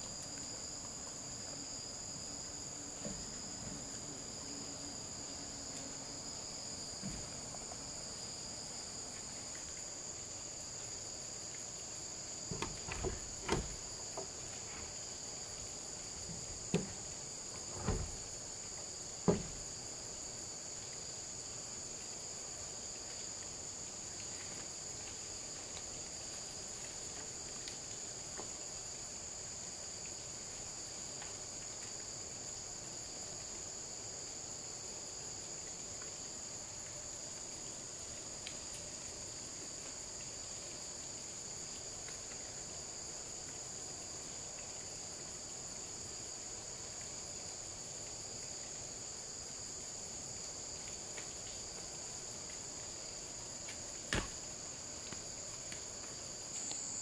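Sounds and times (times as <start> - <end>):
high insect chorus: 0.0 - 57.0
short knocks: 12.5 - 14.4.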